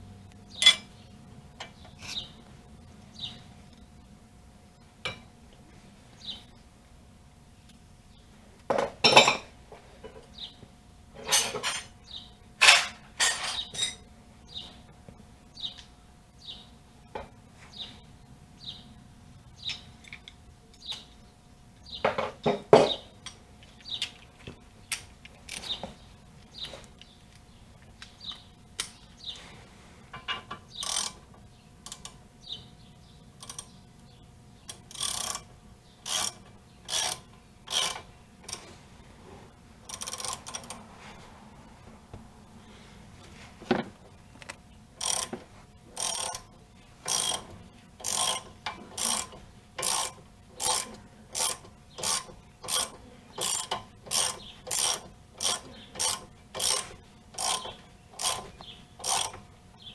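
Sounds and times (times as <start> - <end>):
low steady hum: 0.0 - 59.9
steel tools clinking and clanking: 0.6 - 0.9, 11.2 - 12.0, 12.6 - 14.1.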